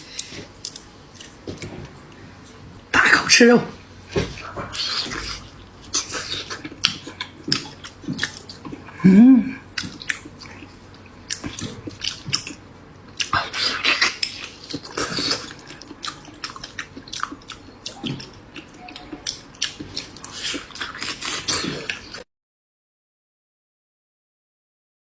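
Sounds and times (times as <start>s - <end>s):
person chewing with wet smacks: 0.0s - 22.2s.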